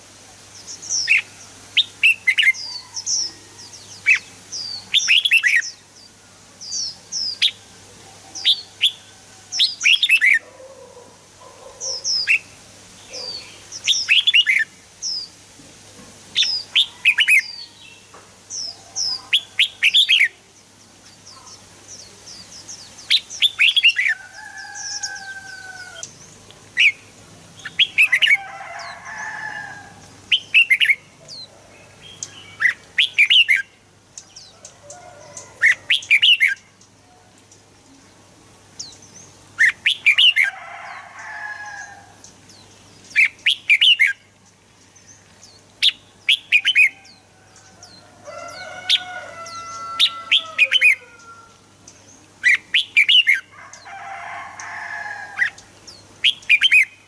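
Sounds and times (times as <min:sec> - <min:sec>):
bulbul singing: 0:00.6 - 0:07.7, 0:16.3 - 0:40.5, 0:42.2 - 0:47.8, 0:55.4 - 0:57.0.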